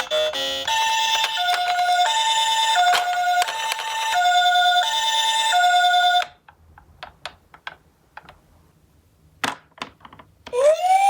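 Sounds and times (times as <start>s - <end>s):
toy ambulance two-tone siren: 10.6s - 11.0s.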